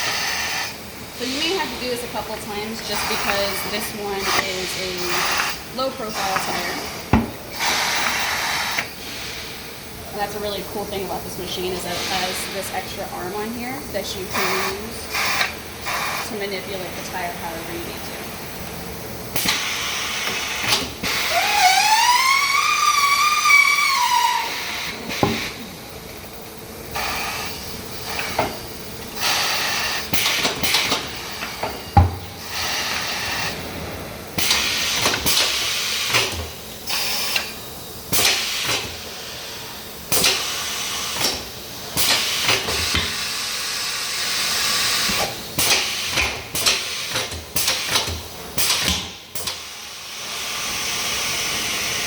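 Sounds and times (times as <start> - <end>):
air hiss bursts: 2.9 - 9.7, 11.8 - 12.7, 27.0 - 33.6, 34.4 - 52.0
sharp clicks and knocks: 45.0 - 49.6.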